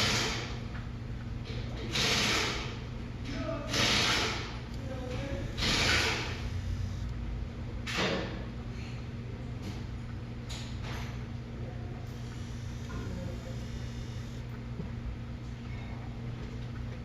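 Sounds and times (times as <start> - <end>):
wiper motor humming: 4.5 - 7.8, 11.9 - 15.5.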